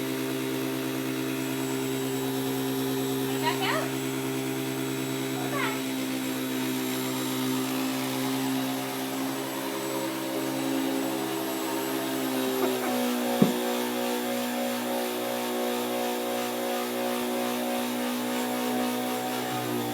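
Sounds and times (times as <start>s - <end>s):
vacuum cleaner running: 0.0s - 19.9s
sharp knock: 13.4s - 13.6s.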